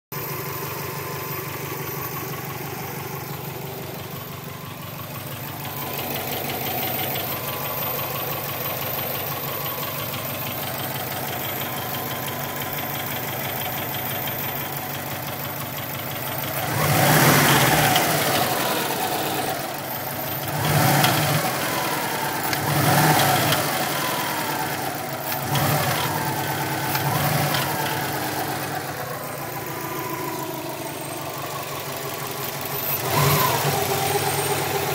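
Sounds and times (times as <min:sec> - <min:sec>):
car engine idling with knocking: 0:00.1 - 0:34.9
engine revs blipped: 0:16.4 - 0:34.9.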